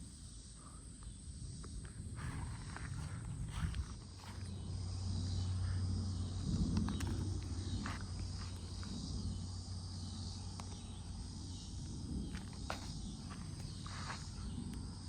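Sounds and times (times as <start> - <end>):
crickets droning: 0.0 - 15.0
low rumble: 1.8 - 15.0.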